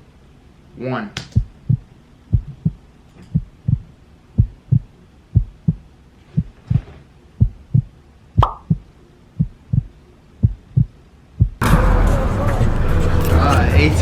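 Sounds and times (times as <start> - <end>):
heartbeat-like double thumps: 1.4 - 12.0.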